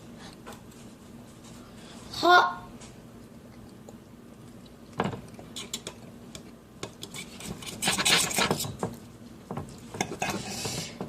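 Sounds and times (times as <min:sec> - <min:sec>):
knife clinking and scraping dish: 0:10.0 - 0:10.6.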